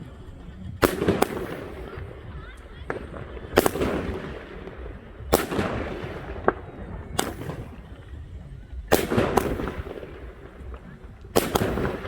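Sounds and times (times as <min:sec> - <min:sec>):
faint firework crack: 0:00.0 - 0:12.0
firework bangs with hiss: 0:00.0 - 0:12.0.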